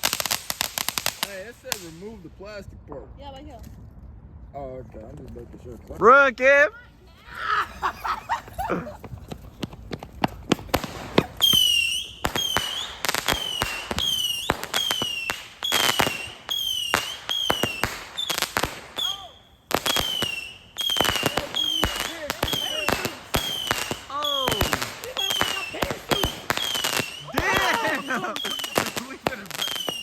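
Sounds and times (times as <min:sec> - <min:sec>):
firework crackling pops: 0:00.0 - 0:02.3, 0:08.2 - 0:30.0
firework sharp cracks: 0:00.0 - 0:02.4, 0:07.7 - 0:30.0
firework whistles falling in pitch: 0:11.4 - 0:30.0.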